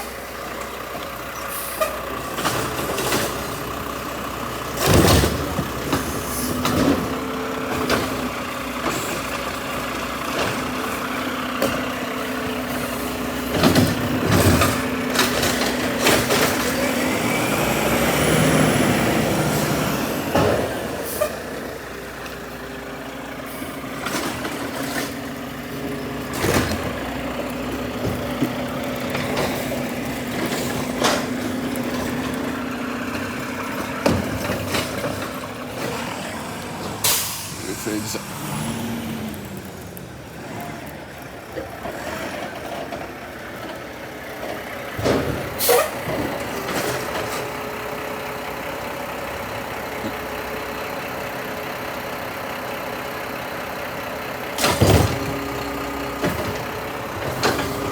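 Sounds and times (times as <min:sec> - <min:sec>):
truck engine running: 0:00.0 - 0:57.9
sharp clanks and knocks: 0:26.2 - 0:36.1.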